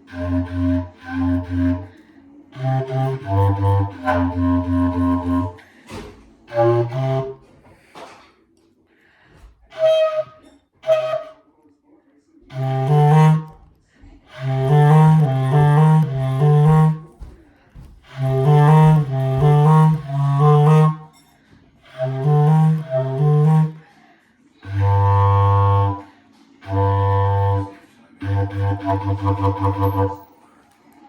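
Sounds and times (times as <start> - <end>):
low wind instrument playing: 0.0 - 5.7, 6.5 - 7.6, 9.7 - 11.4, 12.5 - 17.2, 18.1 - 21.1, 21.8 - 23.9, 24.6 - 30.3.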